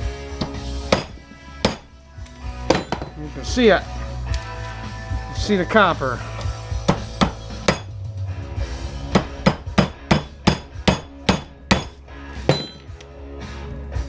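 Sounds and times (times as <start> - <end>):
hammer striking metal transformer: 0.4 - 1.9, 2.7 - 3.2, 6.9 - 7.9, 9.1 - 12.9.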